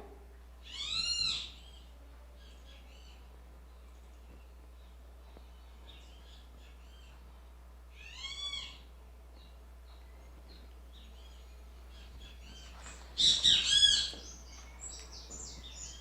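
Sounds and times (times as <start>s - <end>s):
bird calling: 0.0s - 3.3s, 7.9s - 9.6s, 11.0s - 16.0s.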